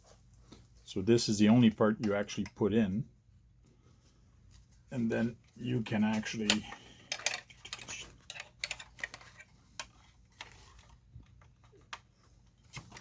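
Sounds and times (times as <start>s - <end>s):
plastic parts clicking and tapping: 6.1s - 13.0s.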